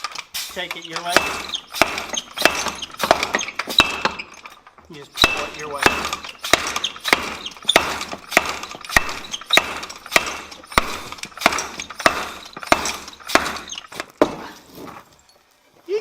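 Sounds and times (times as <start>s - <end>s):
hammer striking steel: 0.7s - 4.5s, 5.1s - 14.4s.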